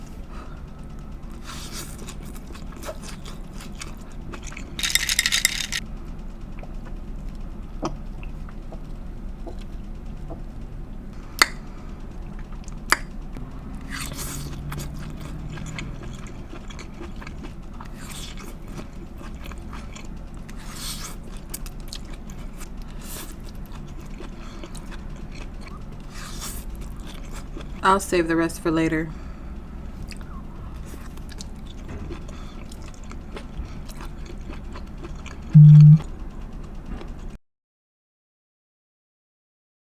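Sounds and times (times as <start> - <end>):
chewing and biting: 1.3 - 5.8, 13.8 - 27.8, 30.0 - 35.5.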